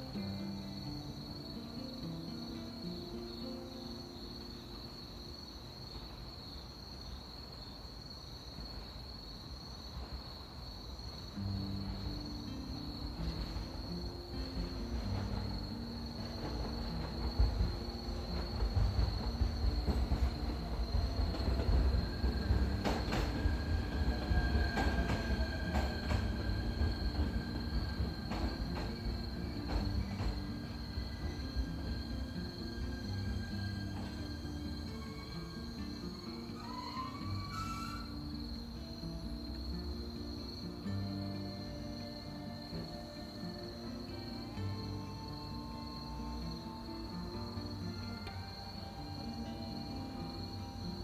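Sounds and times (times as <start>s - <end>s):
electric train rumbling: 0.0s - 51.0s
insects trilling: 0.0s - 51.0s
train wheels clacking on rail joints: 11.4s - 38.1s.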